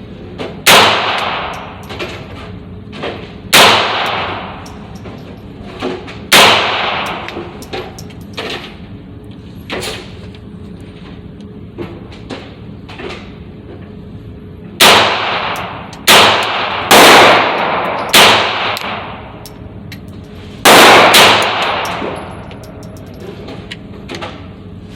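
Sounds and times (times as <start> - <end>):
pistol gunshots: 0.6 - 1.7, 3.5 - 4.6, 6.3 - 7.3, 14.8 - 19.3, 20.7 - 22.2.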